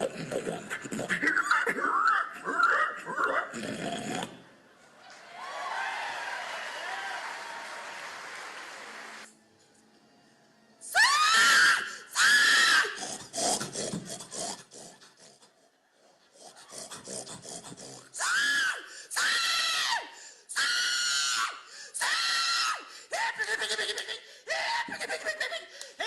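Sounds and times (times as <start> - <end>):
choppy grunting: 0.0 - 4.4, 13.0 - 18.2.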